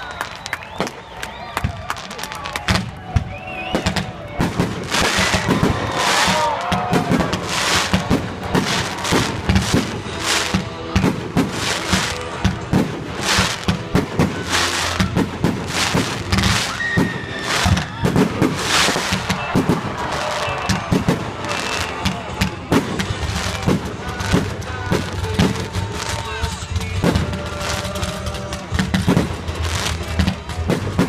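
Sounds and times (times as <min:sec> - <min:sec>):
fireworks bangs: 0:00.0 - 0:31.0
music: 0:00.0 - 0:31.0
voices: 0:11.6 - 0:28.8.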